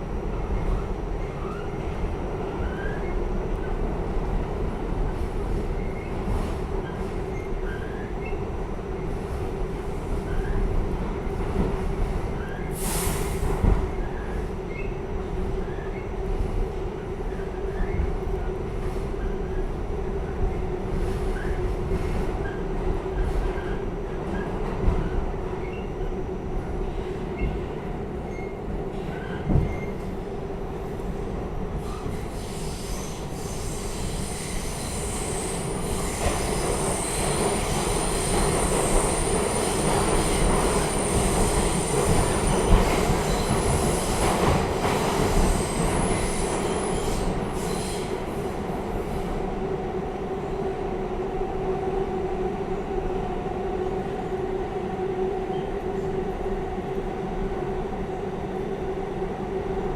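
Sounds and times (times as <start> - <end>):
hum of wheels on rail: 0.0 - 59.9.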